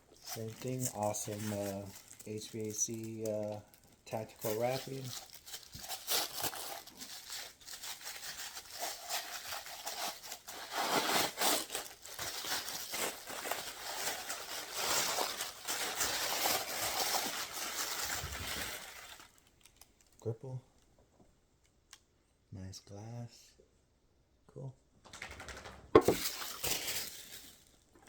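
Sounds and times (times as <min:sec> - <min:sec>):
wrapping paper crinkling: 0:00.1 - 0:20.0, 0:26.0 - 0:28.0
paper ripping: 0:04.1 - 0:19.4.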